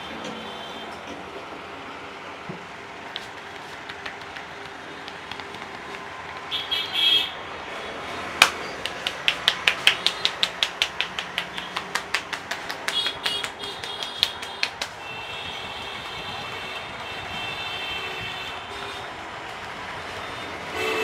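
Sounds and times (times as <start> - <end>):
hands tapping on a head: 3.1 - 6.5, 8.4 - 15.0.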